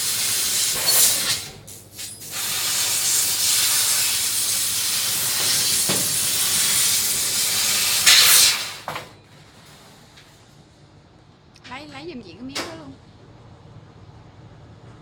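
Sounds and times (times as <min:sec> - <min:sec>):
hiss of rushing air: 0:00.0 - 0:08.9.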